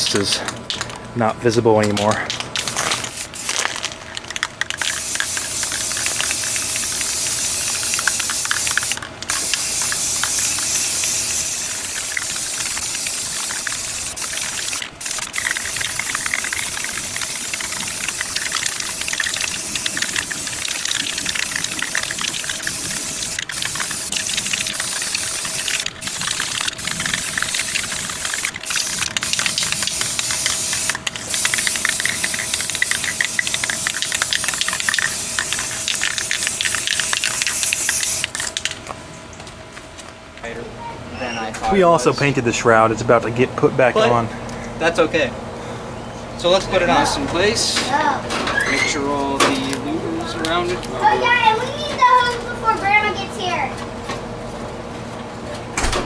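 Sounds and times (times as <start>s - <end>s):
spray paint can hissing: 2.6s - 38.8s.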